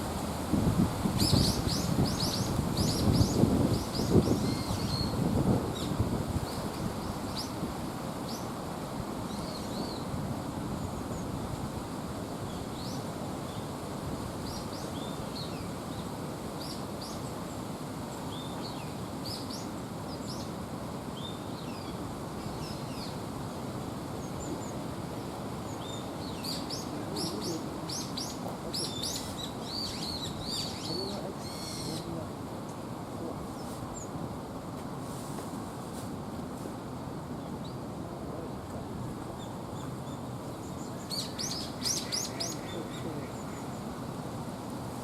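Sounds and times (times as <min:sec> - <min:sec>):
small birds chirping: 0:25.6 - 0:32.2, 0:39.4 - 0:43.9.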